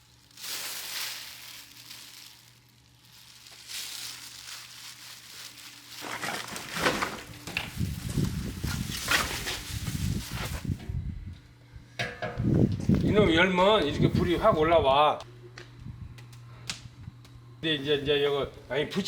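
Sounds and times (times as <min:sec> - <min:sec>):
wood fire crackling and hissing: 0:00.0 - 0:10.8.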